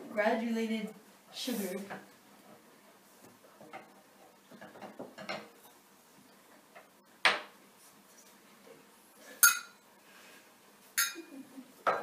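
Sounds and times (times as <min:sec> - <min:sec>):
utensils and dishes clattering: 0:11.0 - 0:12.0.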